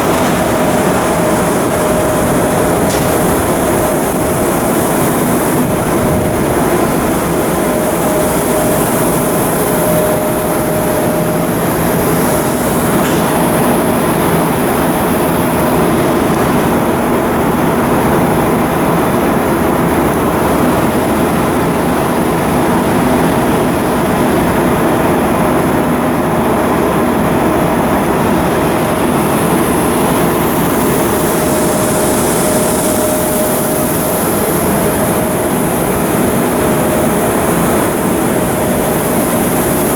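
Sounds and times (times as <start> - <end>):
loud mechanical din: 0.0 - 16.7
faint constant hum: 0.0 - 39.9.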